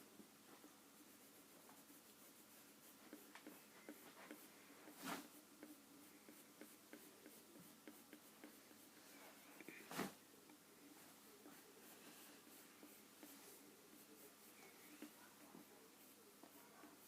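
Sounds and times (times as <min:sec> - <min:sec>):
drawing tool scratching and tapping: 0:01.0 - 0:04.5, 0:05.2 - 0:09.0, 0:11.4 - 0:17.0.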